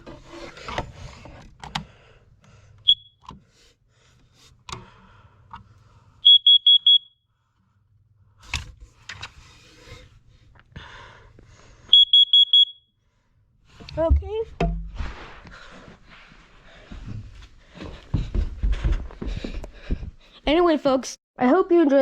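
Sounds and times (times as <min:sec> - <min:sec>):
high alarm beeps: 0:02.9 - 0:03.2, 0:06.2 - 0:07.2, 0:11.9 - 0:12.9.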